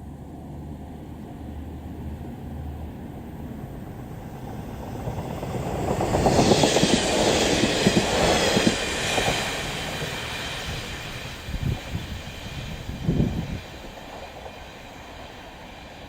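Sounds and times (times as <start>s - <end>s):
train wheels clacking over rail joints: 5.0s - 15.7s.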